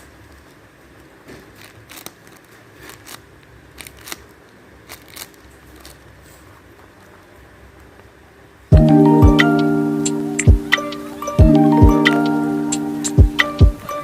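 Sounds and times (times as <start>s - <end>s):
scissors snipping paper: 1.4s - 6.1s.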